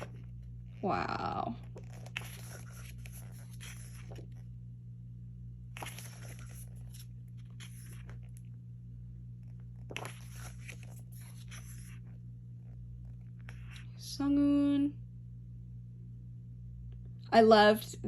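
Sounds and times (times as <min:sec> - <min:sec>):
low hum: 0:00.0 - 0:18.0
paper rustling: 0:01.6 - 0:04.4, 0:05.7 - 0:08.5, 0:09.4 - 0:12.2.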